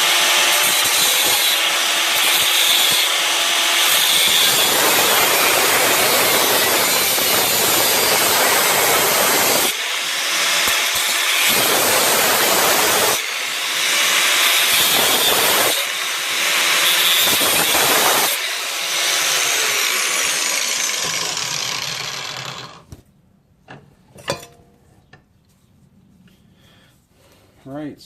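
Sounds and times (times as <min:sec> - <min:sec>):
cutoff wheel grinding metal: 0:00.0 - 0:22.9
wheel winding down: 0:20.6 - 0:22.9.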